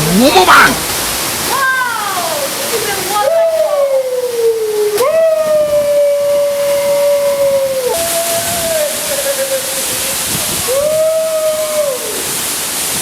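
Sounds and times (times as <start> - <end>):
waterfall rushing: 0.0 - 13.0
person shouting woooo: 3.2 - 12.2.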